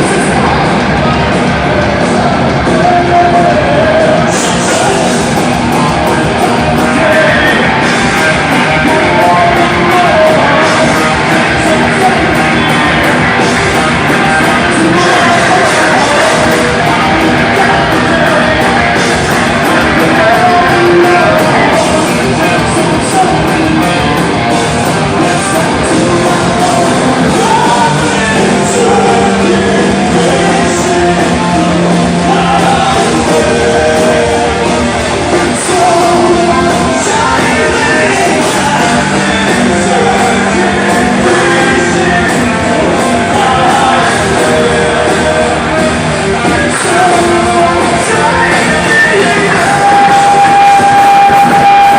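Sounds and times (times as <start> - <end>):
live rock band: 0.0 - 51.9
person singing: 0.0 - 51.9.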